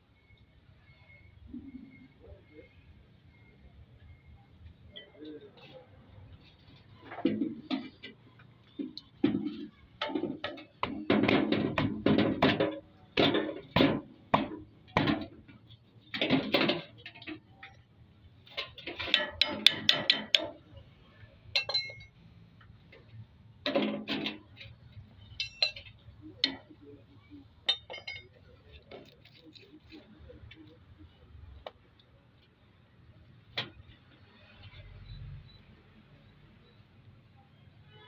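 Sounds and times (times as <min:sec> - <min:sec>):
metal tools clinking: 0:21.6 - 0:22.2, 0:25.2 - 0:26.6, 0:27.7 - 0:30.0.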